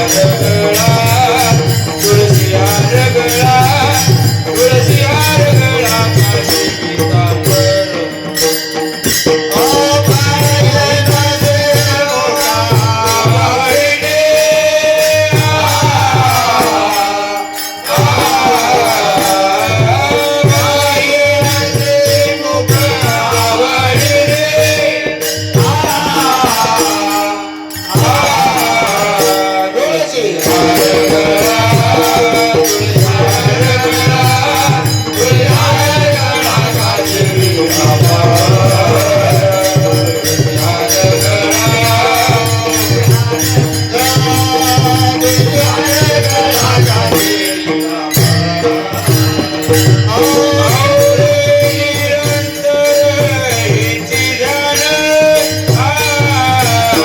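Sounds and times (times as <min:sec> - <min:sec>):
hand cymbals jingling: 0:00.0 - 0:57.0
man singing: 0:00.0 - 0:57.0.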